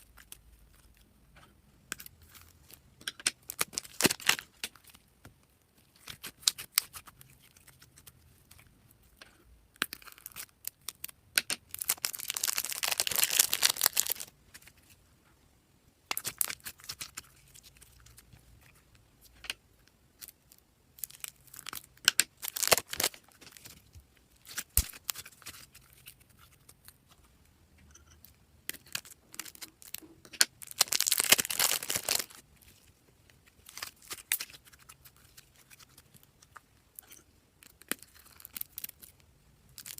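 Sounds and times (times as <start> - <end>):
dense slime crackling: 2.6 - 4.6, 11.7 - 14.3, 21.0 - 25.6, 28.7 - 32.4.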